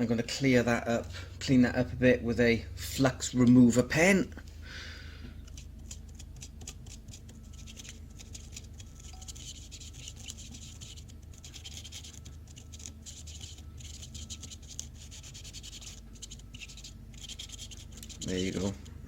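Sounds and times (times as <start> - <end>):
pen scratching circuit board: 5.5 - 18.8.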